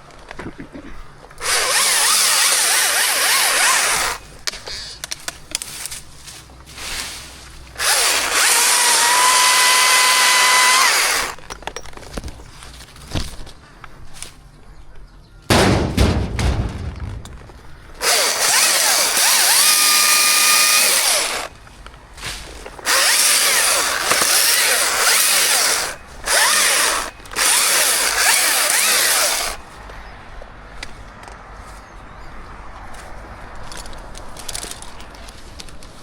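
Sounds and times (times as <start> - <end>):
chainsaw cutting wood: 1.4 - 4.2, 7.8 - 11.4, 18.0 - 21.5, 22.7 - 29.6
heavy low thud: 15.5 - 18.7.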